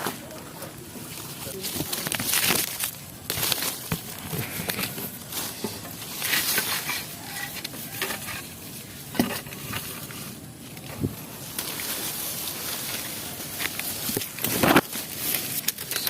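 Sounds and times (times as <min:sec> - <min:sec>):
rustling and scraping on bark: 0:00.0 - 0:16.0.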